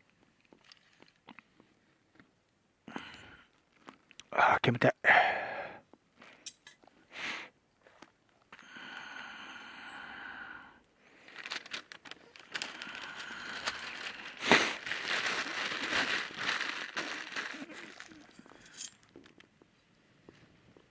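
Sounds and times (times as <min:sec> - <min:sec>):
papery rustling: 0:11.2 - 0:18.4
wood fire crackling and popping: 0:11.3 - 0:17.5.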